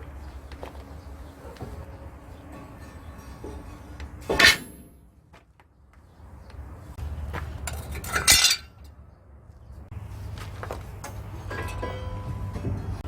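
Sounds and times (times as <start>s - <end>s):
metal clanking on metal: 1.5s - 5.1s, 7.6s - 8.9s, 11.0s - 13.0s.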